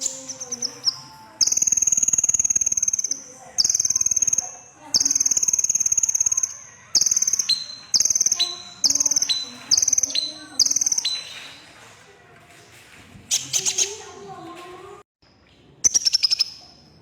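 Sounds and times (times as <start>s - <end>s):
sunbird singing buzzy trills: 0.0s - 11.5s.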